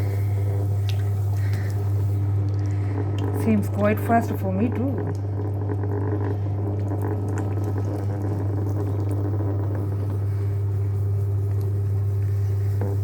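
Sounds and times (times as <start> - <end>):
pottery wheel humming: 0.0 - 13.0.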